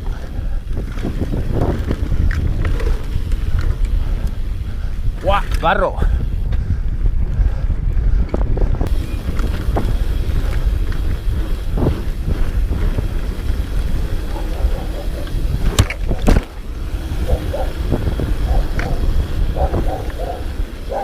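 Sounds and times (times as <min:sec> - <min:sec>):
wind rumble on microphone: 0:00.0 - 0:21.0
motorcycle engine running: 0:08.8 - 0:21.0.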